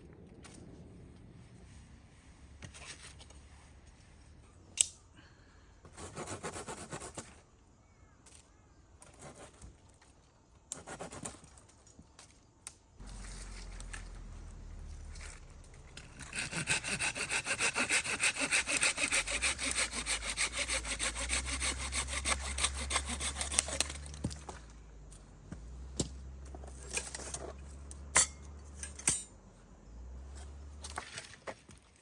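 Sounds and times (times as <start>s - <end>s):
hand saw cutting firewood: 5.9s - 7.3s, 15.2s - 24.5s.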